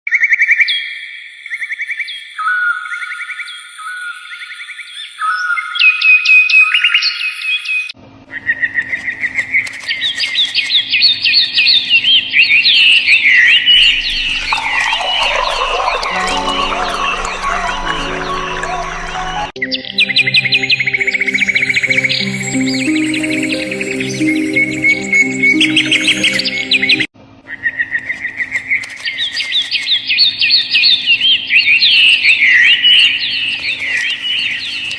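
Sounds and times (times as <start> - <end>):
birds chirping: 9.2 - 27.1
steady music-like tones: 16.1 - 27.1.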